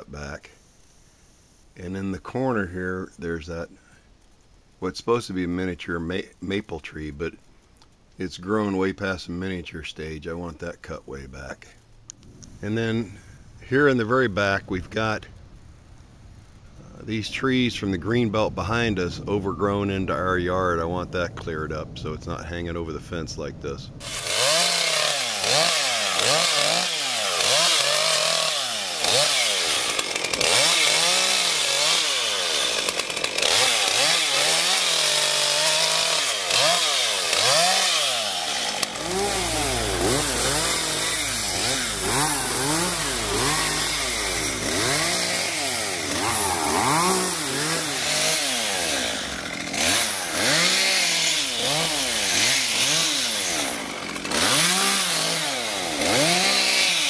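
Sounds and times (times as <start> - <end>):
chainsaw revving: 24.0 - 57.0.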